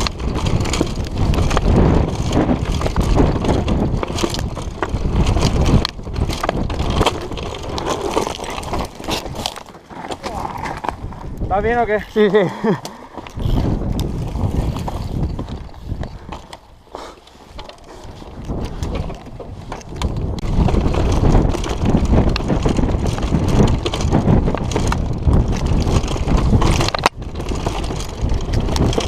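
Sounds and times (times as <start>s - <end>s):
wind buffeting microphone: 0.0s - 9.6s, 10.3s - 29.0s.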